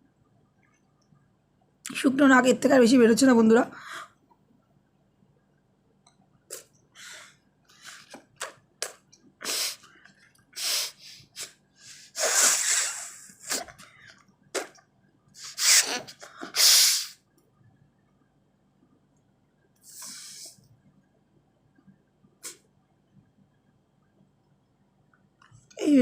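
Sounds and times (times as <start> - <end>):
woman blowing her nose: 9.4 - 9.9, 10.6 - 13.8, 15.4 - 17.2, 19.9 - 20.6.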